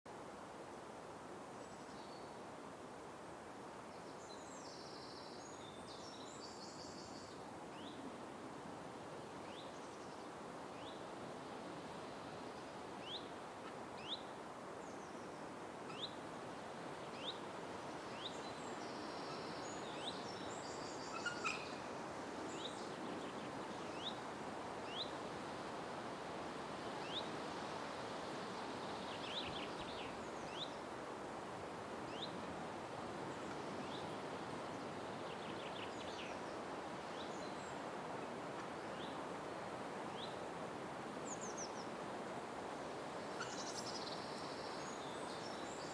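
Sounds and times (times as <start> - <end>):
steady background hiss: 0.1 - 45.9
bird calls: 18.2 - 21.9, 43.4 - 43.9.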